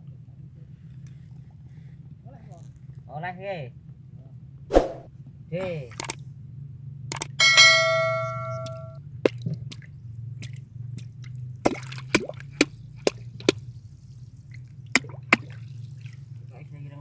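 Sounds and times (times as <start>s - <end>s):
steady low hum: 0.0s - 17.0s
sharp clicks and taps: 7.1s - 7.4s
metallic clang ringing: 7.4s - 9.0s.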